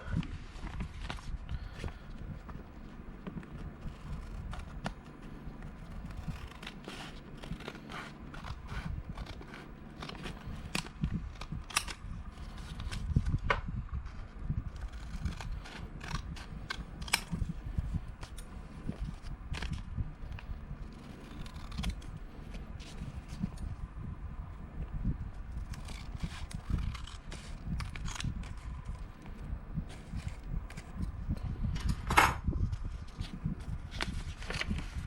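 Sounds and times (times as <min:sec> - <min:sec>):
paper rustling: 0:00.4 - 0:13.1, 0:32.8 - 0:35.0
scissors snipping paper: 0:01.8 - 0:13.0, 0:14.7 - 0:23.7, 0:25.5 - 0:31.1.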